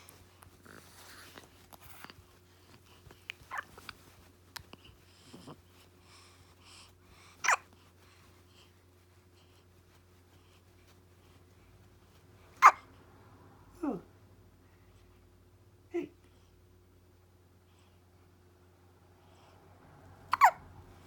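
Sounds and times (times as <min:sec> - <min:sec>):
baby hiccuping: 0:12.6 - 0:12.8, 0:20.3 - 0:20.6.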